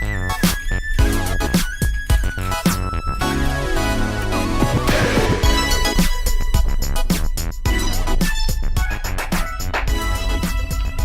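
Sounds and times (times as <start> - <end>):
electronic music with drum machine: 4.4 - 9.3.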